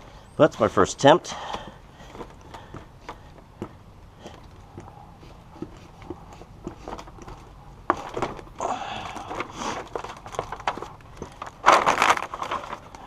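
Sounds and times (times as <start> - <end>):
foil sheet rustling and crinkling: 9.2 - 13.0.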